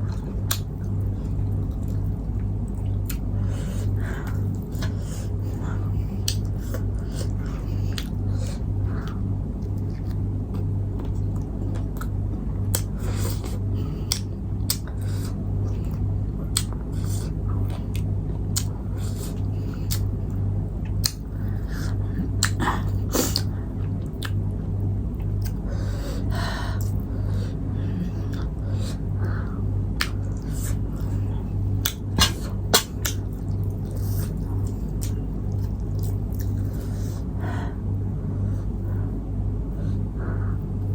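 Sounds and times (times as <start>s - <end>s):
person chewing and eating: 0.0s - 37.4s
steady low hum: 0.0s - 40.9s
wet mouth clicks and smacks: 0.4s - 0.7s, 12.7s - 12.9s, 14.1s - 14.9s, 19.9s - 20.1s, 20.8s - 21.3s, 24.1s - 24.4s, 31.8s - 36.6s.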